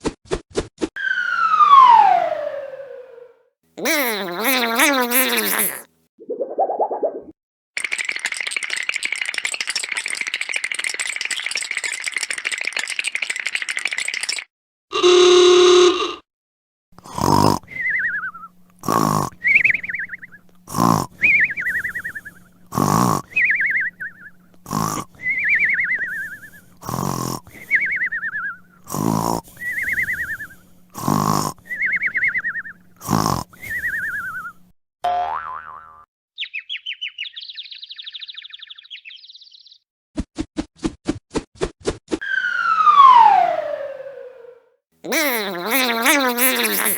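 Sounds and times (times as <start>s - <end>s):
cartoon snoring: 3.8s - 5.9s, 17.0s - 17.8s, 18.8s - 19.4s, 20.7s - 21.2s, 22.7s - 23.3s, 24.7s - 25.1s, 26.8s - 27.5s, 28.9s - 29.5s, 31.0s - 31.6s, 33.0s - 33.5s, 45.1s - 46.9s.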